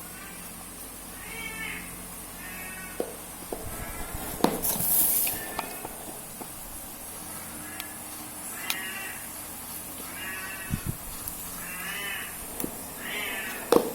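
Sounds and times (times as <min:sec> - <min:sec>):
cat meowing: 0:01.2 - 0:03.0, 0:07.5 - 0:09.2, 0:10.1 - 0:11.0, 0:11.6 - 0:13.8.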